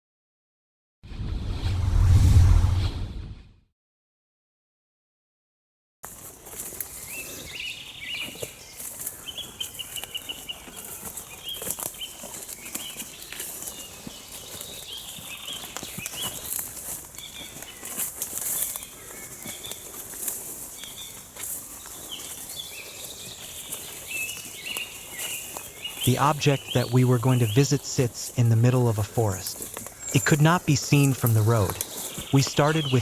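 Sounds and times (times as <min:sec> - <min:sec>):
small birds chirping: 0:06.5 - 0:33.0
steady high hiss: 0:30.2 - 0:33.0.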